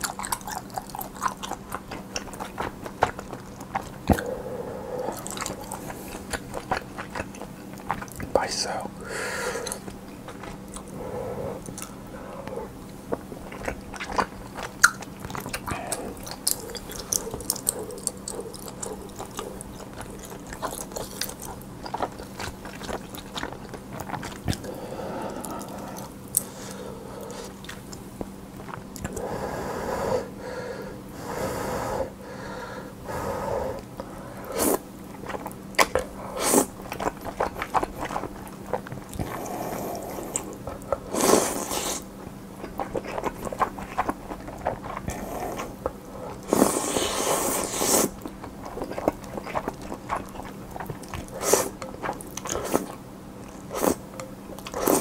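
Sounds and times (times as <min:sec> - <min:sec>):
chewing and crunching: 0:00.0 - 0:08.8, 0:09.5 - 0:29.3, 0:33.8 - 0:55.0
low electrical hum: 0:00.0 - 0:55.0.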